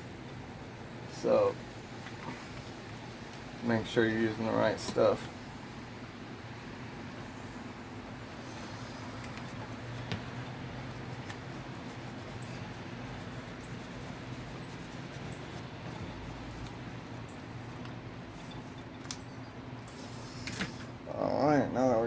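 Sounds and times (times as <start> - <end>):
steady low hum: 0.0 - 22.0
scratching and clicks of handling: 1.9 - 5.2, 9.0 - 19.3.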